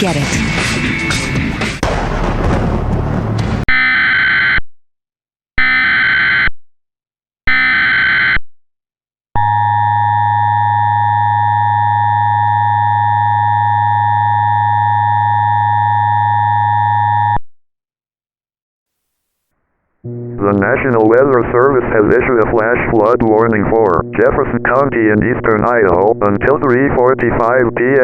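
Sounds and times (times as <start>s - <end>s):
buzzing attention tone: 9.4s - 17.4s, 20.1s - 28.0s.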